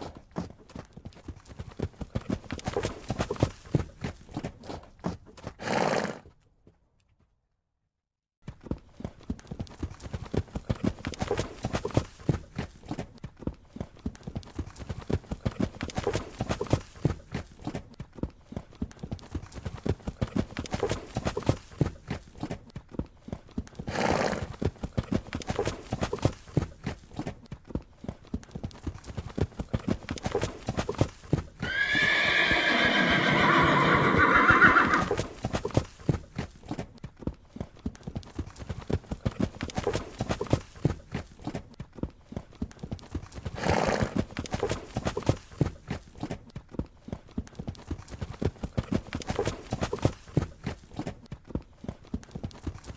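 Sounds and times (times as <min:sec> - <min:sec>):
horse hooves clip-clopping: 0:00.0 - 0:07.4, 0:08.4 - 0:52.9
horse whinny: 0:31.6 - 0:35.3.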